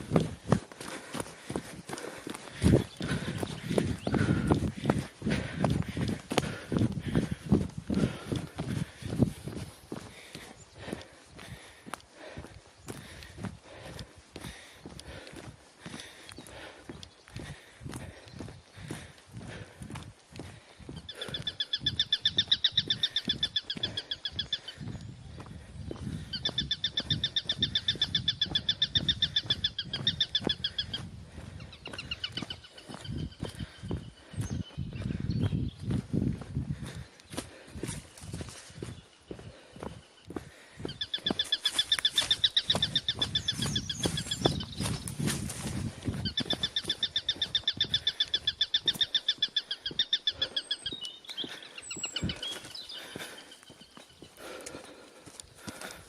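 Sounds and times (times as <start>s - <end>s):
bird trilling: 20.9s - 25.0s, 26.3s - 31.1s, 40.8s - 54.4s.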